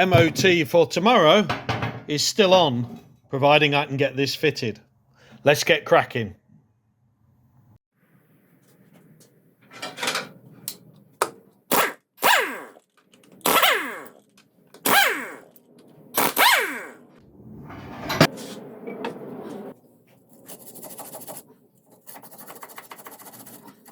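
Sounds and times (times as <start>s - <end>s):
impact wrench bursts: 11.7s - 12.8s, 13.4s - 14.2s, 14.8s - 15.5s, 16.1s - 17.1s.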